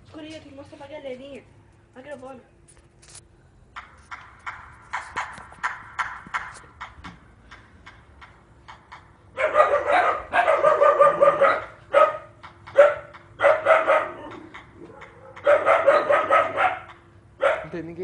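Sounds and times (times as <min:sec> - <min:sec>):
dog barking and yelping: 0:09.3 - 0:17.7.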